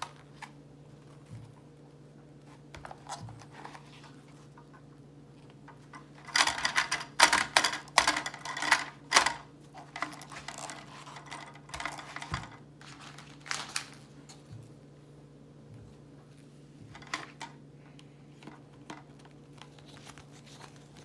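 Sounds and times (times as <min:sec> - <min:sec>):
faint steady hum: 0:00.0 - 0:21.0
plastic packaging rustling and clattering: 0:02.4 - 0:14.7, 0:16.9 - 0:17.6, 0:18.3 - 0:21.0.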